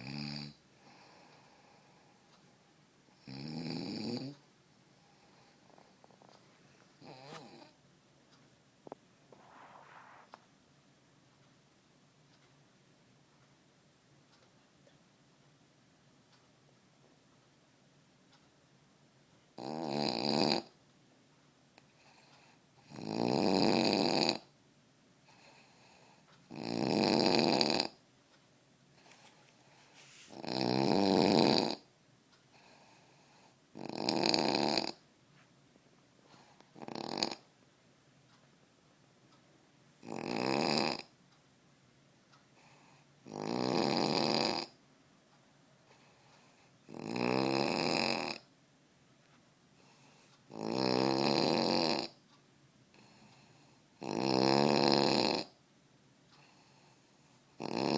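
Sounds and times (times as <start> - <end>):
man snoring: 0.0 - 0.6, 3.2 - 4.4, 7.0 - 7.7, 19.6 - 20.7, 22.8 - 24.5, 26.5 - 28.0, 30.3 - 31.9, 33.8 - 35.0, 36.8 - 37.4, 40.0 - 41.1, 43.2 - 44.8, 46.9 - 48.4, 50.5 - 52.2, 54.0 - 55.6, 57.6 - 57.9
faint breaths: 0.0 - 3.4, 4.2 - 7.8, 8.9 - 10.5, 21.8 - 22.9, 25.2 - 26.4, 42.5 - 43.2, 45.8 - 46.8, 49.7 - 50.5, 52.9 - 54.0, 56.3 - 57.5.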